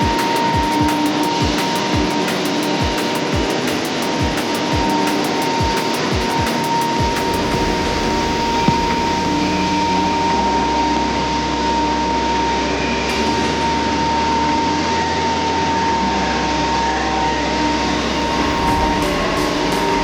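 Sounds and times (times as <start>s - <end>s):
continuous machine hiss: 0.0s - 14.9s.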